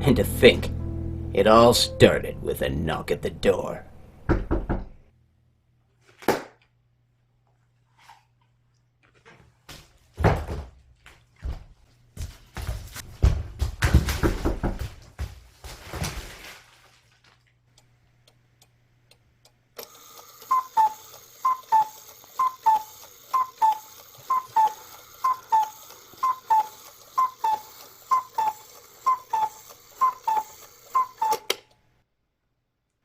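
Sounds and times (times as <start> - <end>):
clock mechanism click: 17.8 - 31.7
cuckoo clock calling: 19.8 - 31.7.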